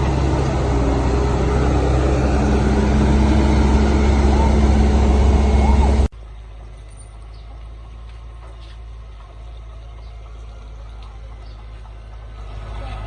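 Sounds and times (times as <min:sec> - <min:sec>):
heavy machinery engine rumble: 0:00.0 - 0:13.0.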